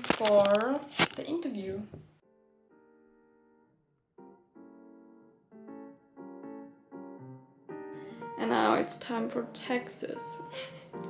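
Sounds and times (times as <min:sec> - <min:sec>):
soft piano chords: 0:02.2 - 0:11.0.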